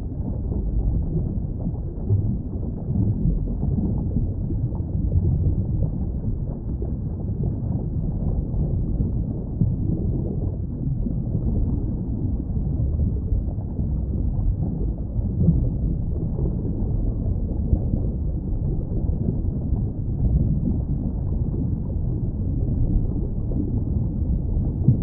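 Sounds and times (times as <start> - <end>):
muffled underwater rumble: 0.0 - 25.0.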